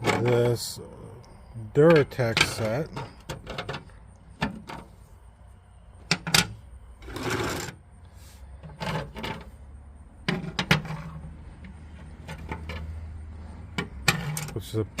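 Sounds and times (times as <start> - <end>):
metal wrenches clinking: 1.8 - 3.9, 13.7 - 15.0.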